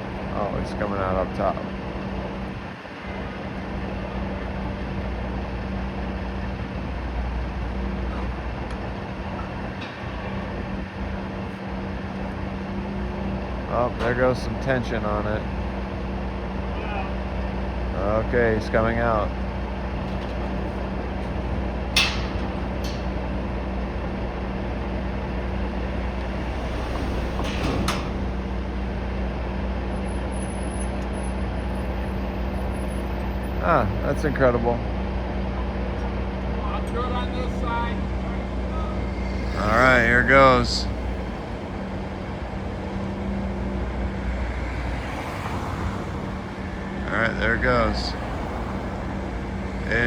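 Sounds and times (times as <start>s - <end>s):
crane engine droning: 0.0s - 50.0s
loud hiss: 38.2s - 43.6s.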